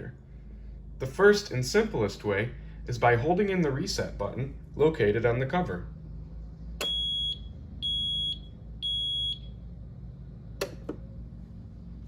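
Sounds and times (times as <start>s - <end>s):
smoke detector alarm beeps: 6.8s - 9.6s.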